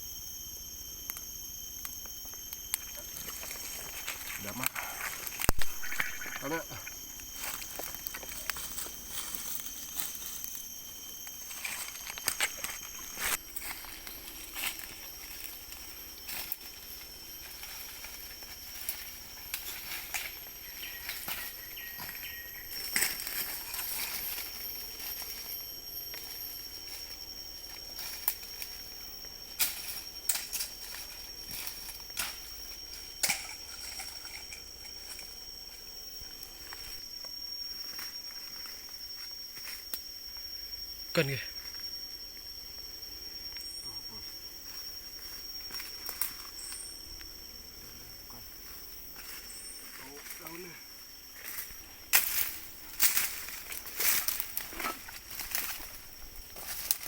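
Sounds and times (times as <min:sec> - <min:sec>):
high-pitched insect drone: 0:00.0 - 0:57.0
twigs and leaves crackling: 0:00.9 - 0:40.1, 0:48.7 - 0:57.0.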